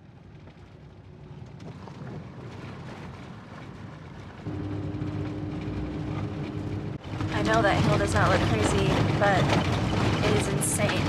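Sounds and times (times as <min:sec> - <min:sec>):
steady whine: 0:04.4 - 0:11.0
van engine under load: 0:04.5 - 0:11.0.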